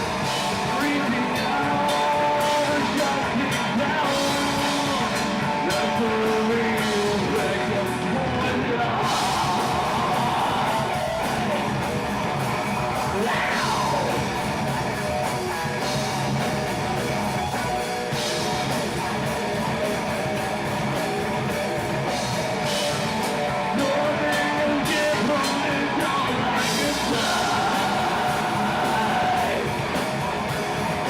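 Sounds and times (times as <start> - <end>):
live heavy metal band: 0.0 - 31.0.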